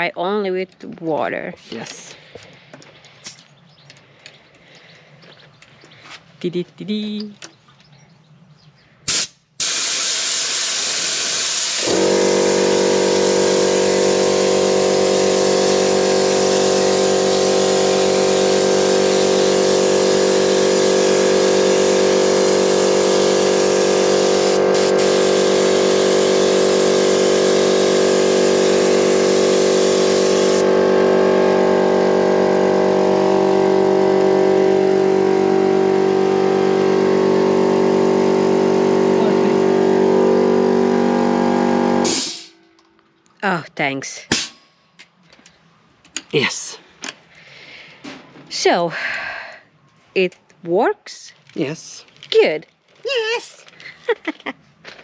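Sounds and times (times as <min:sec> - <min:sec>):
paint gun hissing: 0:09.1 - 0:30.7, 0:42.0 - 0:42.6
air compressor motor running: 0:09.1 - 0:42.6.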